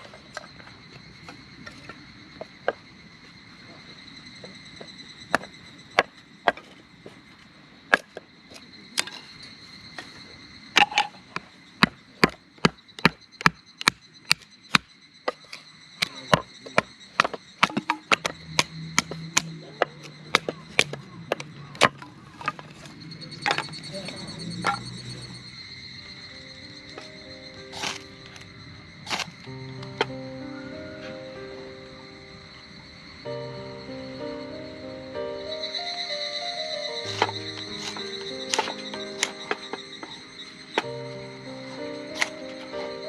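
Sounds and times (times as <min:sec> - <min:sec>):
insects chirring: 0:00.0 - 0:43.0.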